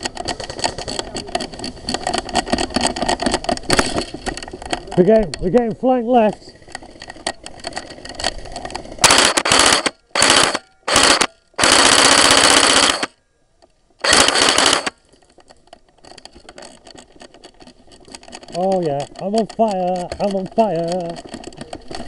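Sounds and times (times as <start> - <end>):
faint clatter: 0.0 - 22.0
airsoft gun firing full auto: 9.0 - 13.2, 14.0 - 15.0.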